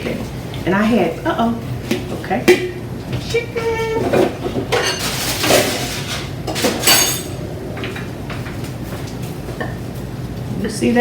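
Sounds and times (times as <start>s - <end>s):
steady low hum: 0.0s - 11.0s
utensils clattering against pans: 1.9s - 9.4s.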